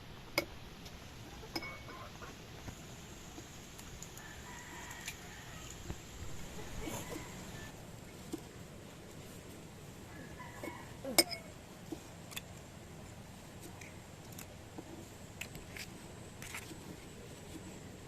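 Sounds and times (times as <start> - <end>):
faint steady hiss: 0.0 - 18.0
sharp ringing clink: 1.6 - 2.0.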